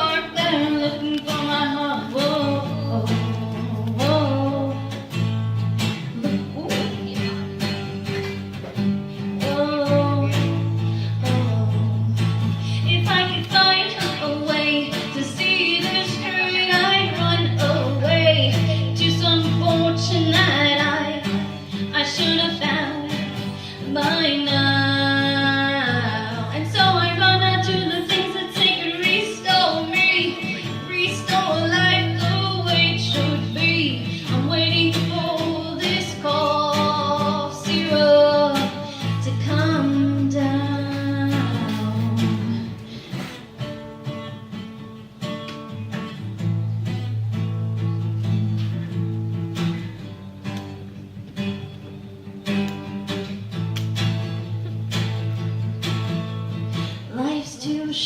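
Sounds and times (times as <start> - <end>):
woman singing: 0.0 - 5.3, 5.9 - 43.3, 57.0 - 58.0
strummed guitar: 0.0 - 58.0.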